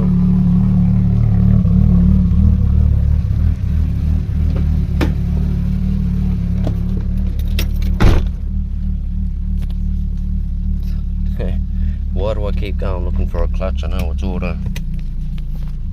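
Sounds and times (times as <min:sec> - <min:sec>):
car engine low rumble: 0:00.0 - 0:15.9.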